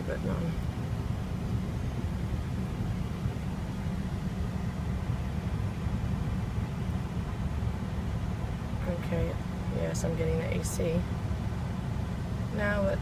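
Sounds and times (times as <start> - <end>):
air conditioning blower: 0.0 - 9.9
car engine running: 0.0 - 13.0.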